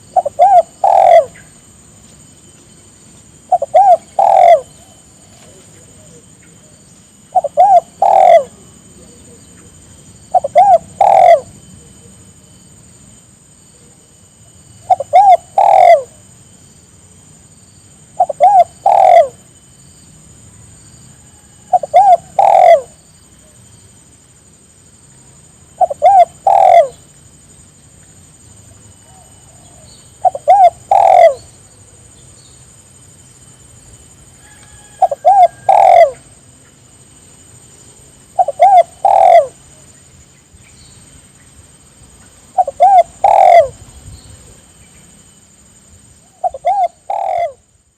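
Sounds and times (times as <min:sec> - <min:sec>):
dove cooing: 0:00.0 - 0:01.6, 0:03.4 - 0:12.2, 0:14.8 - 0:16.2, 0:18.1 - 0:19.5, 0:21.2 - 0:23.1, 0:25.7 - 0:27.1, 0:28.8 - 0:31.6, 0:34.5 - 0:36.4, 0:38.4 - 0:39.9, 0:42.5 - 0:43.8, 0:46.3 - 0:47.7.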